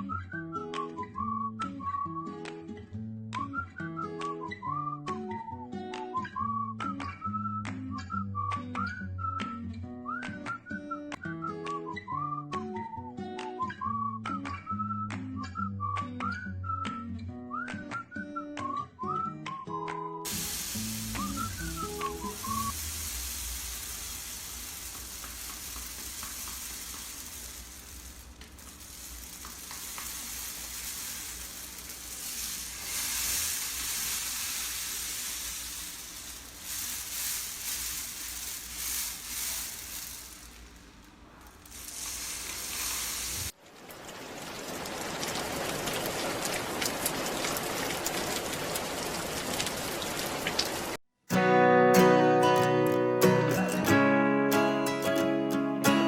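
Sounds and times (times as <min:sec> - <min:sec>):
rain stick rustling: 0:20.3 - 0:44.1.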